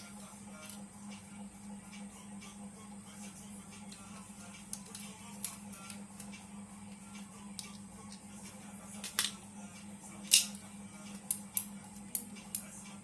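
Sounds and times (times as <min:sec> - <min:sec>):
steady low hum: 0:00.0 - 0:13.0
small tools clicking and tapping: 0:03.9 - 0:08.2, 0:10.3 - 0:12.7.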